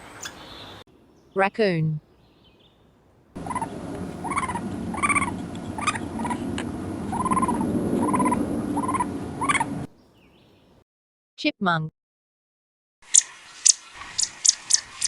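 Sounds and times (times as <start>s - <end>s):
raccoon chirring calls: 3.4s - 9.8s
noisy background: 3.4s - 9.9s.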